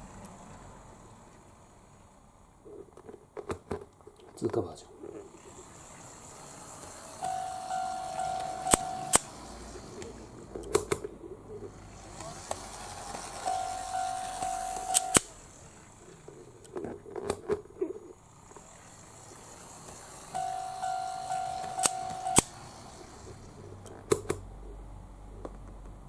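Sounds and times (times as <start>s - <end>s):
low rattle of model track: 4.4s - 17.3s, 18.2s - 23.9s
sharp clicks: 6.8s - 9.4s, 10.0s - 11.2s, 12.2s - 15.4s, 19.8s - 22.7s, 23.8s - 24.5s
level crossing warning tone: 7.1s - 10.5s, 11.9s - 15.3s, 20.2s - 23.5s.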